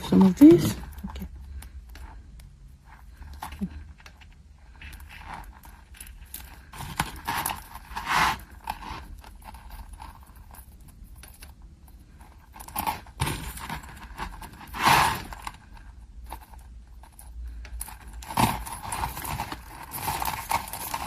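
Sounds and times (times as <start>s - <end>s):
metal chains clinking: 17.8s - 21.0s.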